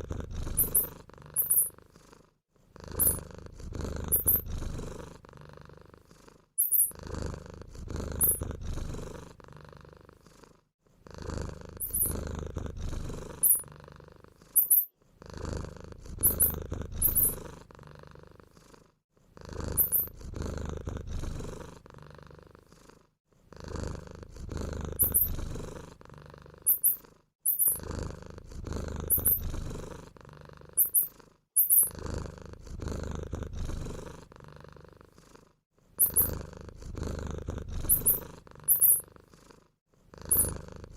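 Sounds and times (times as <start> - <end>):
cat purring: 0.0 - 40.9
high-pitched squeaks: 0.6 - 1.7, 4.2 - 4.4, 6.6 - 6.9, 11.8 - 12.2, 14.6 - 14.9, 19.8 - 20.1, 25.0 - 25.3, 26.7 - 27.8, 29.1 - 29.4, 30.8 - 31.9, 36.0 - 36.3, 37.9 - 39.0.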